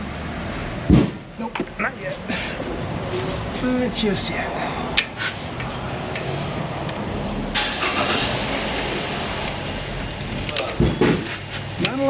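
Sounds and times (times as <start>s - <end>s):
loud rushing noise: 2.5s - 11.8s
vehicle engine running: 5.0s - 12.0s.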